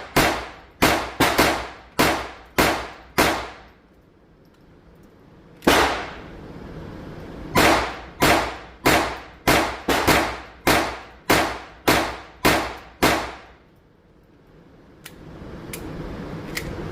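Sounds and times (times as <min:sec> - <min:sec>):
pistol shots: 0:00.0 - 0:03.7, 0:05.6 - 0:06.2, 0:07.5 - 0:13.6.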